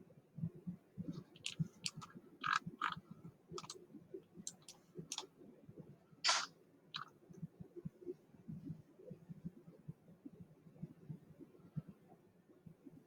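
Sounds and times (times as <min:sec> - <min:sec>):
computer mouse clicking: 0:01.4 - 0:03.0, 0:04.5 - 0:05.2, 0:06.3 - 0:07.1.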